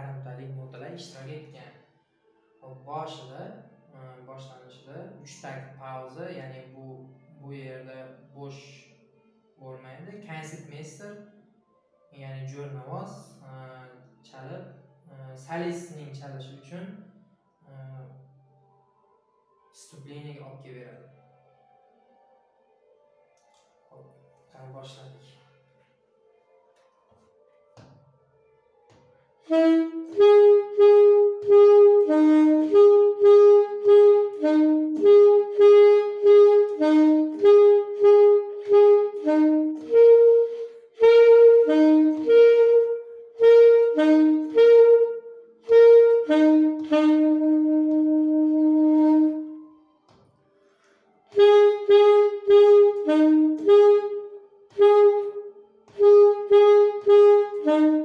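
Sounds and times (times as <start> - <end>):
solo wind instrument melody: 29.4 - 50.1, 51.2 - 58.0.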